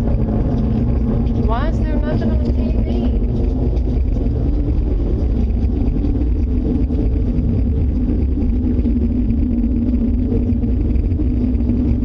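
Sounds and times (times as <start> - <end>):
loud low rumble: 0.0 - 12.0
low hum: 0.0 - 12.0.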